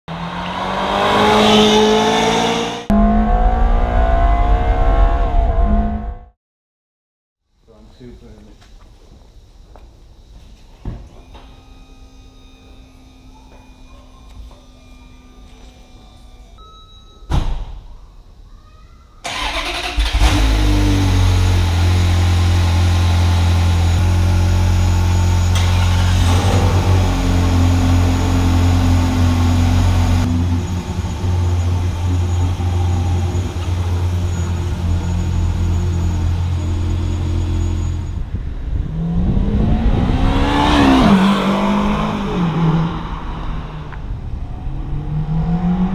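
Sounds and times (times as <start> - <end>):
car engine starting and idling: 19.2 - 38.4.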